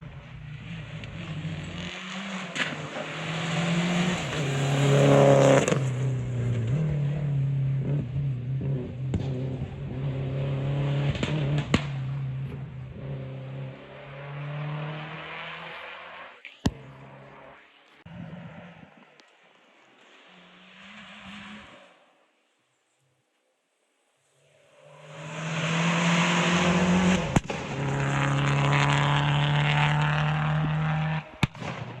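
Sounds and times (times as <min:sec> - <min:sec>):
rally car engine running: 0:00.0 - 0:16.0, 0:25.3 - 0:31.5
exhaust pops and bangs: 0:09.0 - 0:09.8, 0:11.0 - 0:12.8, 0:27.2 - 0:27.9, 0:29.8 - 0:32.0.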